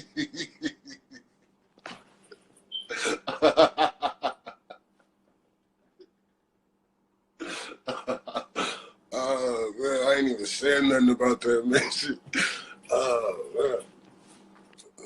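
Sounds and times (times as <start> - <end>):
man laughing: 0.0 - 1.4, 2.9 - 4.8, 7.4 - 8.8.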